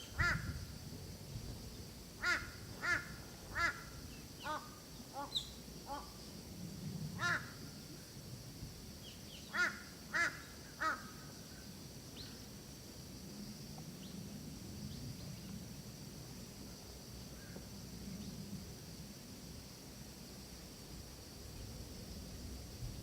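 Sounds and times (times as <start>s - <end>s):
high insect drone: 0.0s - 23.0s
crow cawing: 2.2s - 5.3s, 7.2s - 7.6s, 9.5s - 11.3s.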